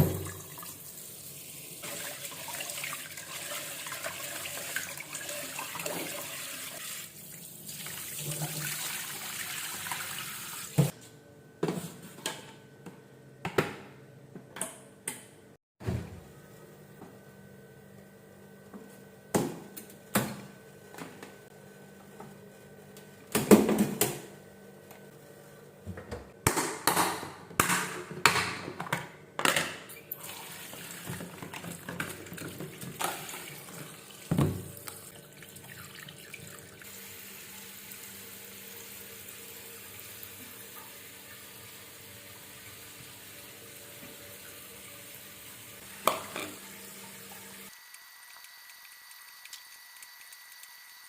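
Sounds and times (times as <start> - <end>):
dishes clattering in sink: 0.0 - 0.6, 31.0 - 34.7, 46.0 - 46.7
tap running into sink: 46.0 - 46.6.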